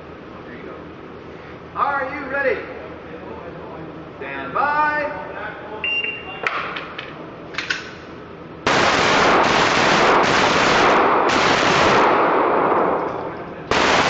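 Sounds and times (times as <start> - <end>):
rapid pistol fire: 8.6 - 13.1, 13.7 - 14.0.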